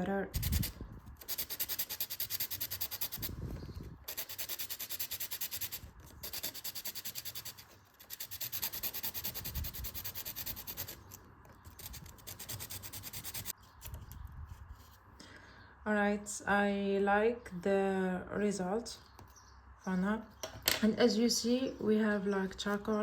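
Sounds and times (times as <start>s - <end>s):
charcoal pencil being sharpened: 4.1s - 11.1s, 11.8s - 14.0s.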